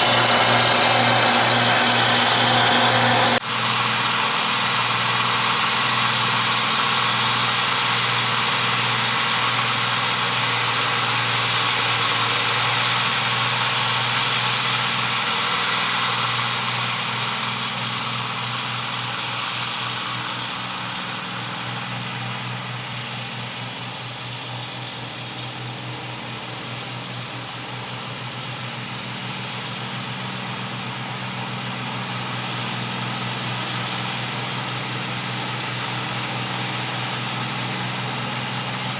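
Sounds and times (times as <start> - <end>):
mechanical whir: 0.0 - 3.4
combine harvester engine drone: 0.0 - 38.9.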